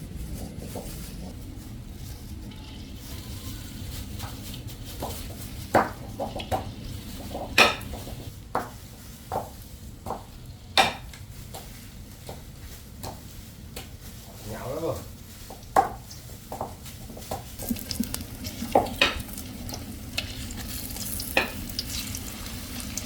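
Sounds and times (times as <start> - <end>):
utensil knocking against pan: 5.0 - 8.3, 17.6 - 22.0.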